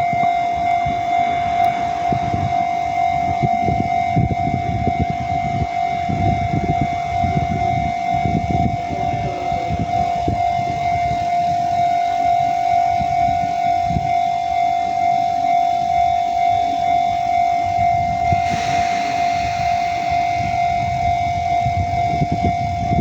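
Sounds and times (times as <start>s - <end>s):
level crossing alarm tone: 0.0s - 23.0s
irregular low rumble: 18.4s - 22.8s.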